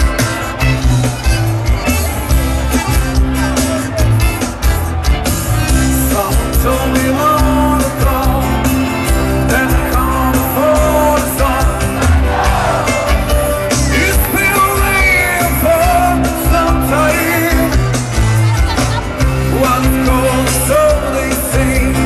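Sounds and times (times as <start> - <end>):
live rock band playing: 0.0 - 22.0
person singing lead vocals: 5.8 - 22.0.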